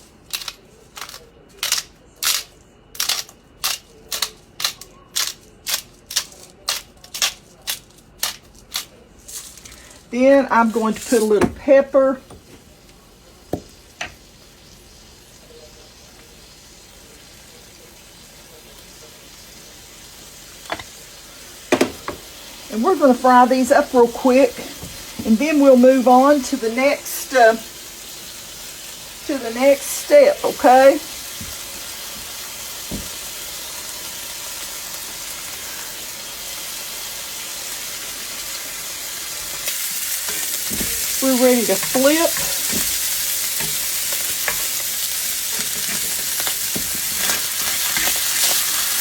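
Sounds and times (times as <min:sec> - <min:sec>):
meat sizzling in a skillet: 0:13.2 - 0:49.0.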